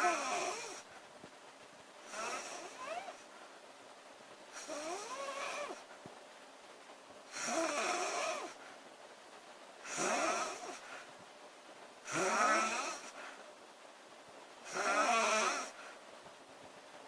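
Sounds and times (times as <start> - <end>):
woman snoring: 0.0 - 0.9, 2.1 - 3.2, 4.6 - 5.8, 7.3 - 8.6, 9.8 - 10.8, 12.1 - 13.2, 14.7 - 15.8.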